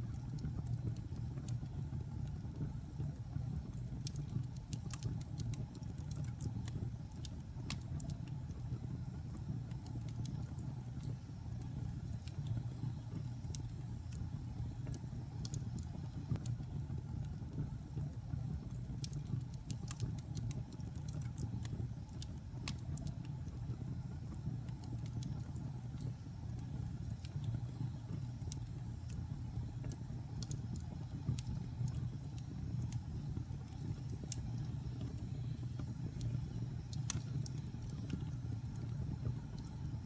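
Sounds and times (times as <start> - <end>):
fire crackling and popping: 0.0 - 40.0
fire flames rumbling: 0.0 - 40.0.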